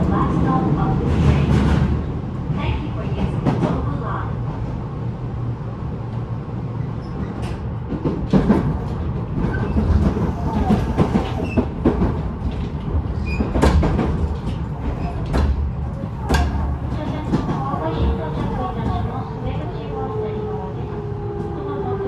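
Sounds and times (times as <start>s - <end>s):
train wheels rumbling on track: 0.0s - 22.0s
rail clicks and knocks: 7.1s - 21.0s
air conditioning running: 14.2s - 20.8s.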